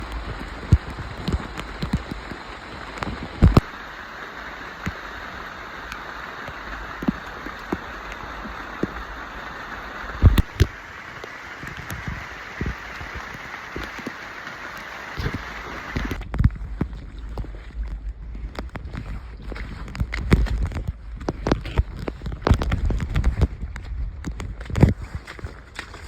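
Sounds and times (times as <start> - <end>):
heavy rain hiss: 0.0 - 16.2.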